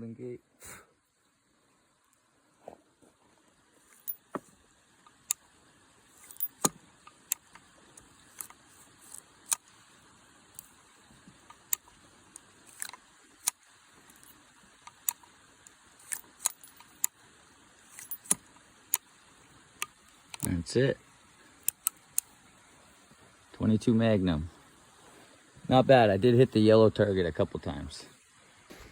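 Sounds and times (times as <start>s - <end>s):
revolver metallic clicks: 6.2s - 9.7s, 11.4s - 17.2s, 17.9s - 19.1s, 19.8s - 20.6s, 21.6s - 22.3s.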